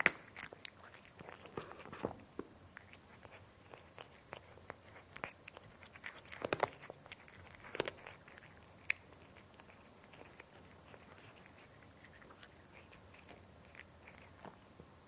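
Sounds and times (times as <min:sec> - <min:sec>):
cat chewing dry kibble: 0:00.0 - 0:15.0.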